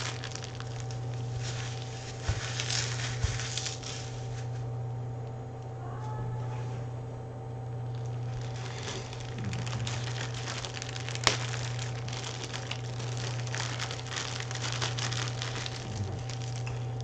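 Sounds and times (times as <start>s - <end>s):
packaging crinkling and rustling: 0.0s - 4.5s, 7.9s - 17.0s
low hum: 0.0s - 17.0s.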